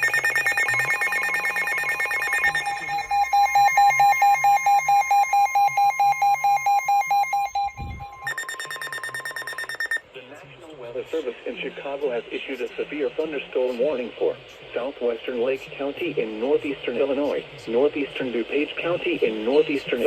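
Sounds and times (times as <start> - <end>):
rapid electronic alarm beeping: 0.0 - 10.0
steady alarm tone: 0.0 - 10.0.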